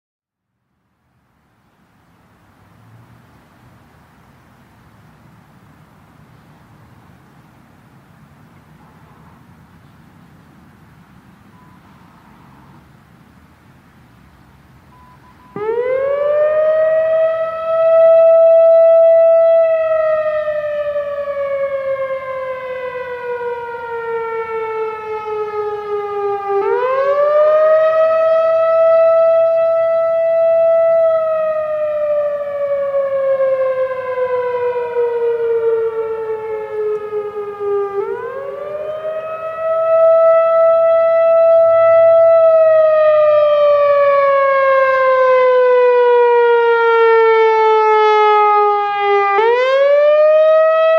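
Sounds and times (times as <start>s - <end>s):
warning siren wailing: 14.9s - 50.9s.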